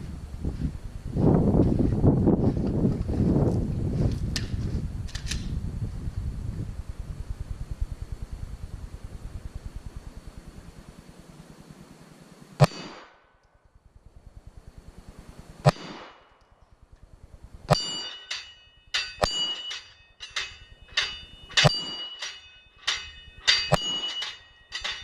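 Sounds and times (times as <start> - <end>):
gunshots: 12.6 - 13.2, 15.6 - 16.3
metallic ring: 17.7 - 25.0.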